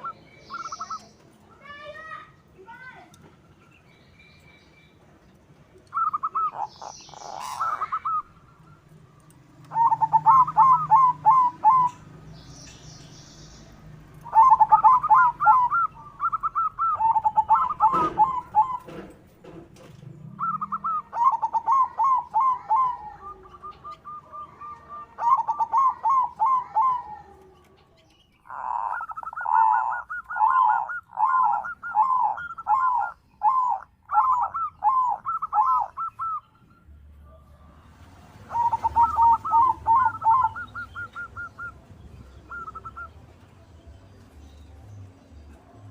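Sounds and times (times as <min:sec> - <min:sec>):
dove cooing: 0:00.0 - 0:01.8, 0:05.9 - 0:08.5, 0:09.6 - 0:12.2, 0:14.2 - 0:19.2, 0:19.8 - 0:36.5, 0:38.3 - 0:43.2.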